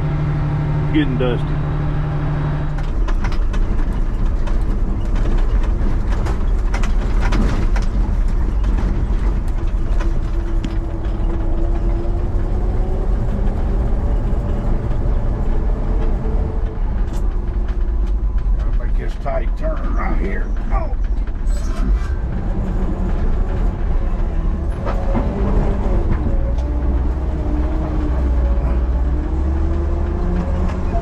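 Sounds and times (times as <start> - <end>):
combine engine rumble: 0.0 - 31.0.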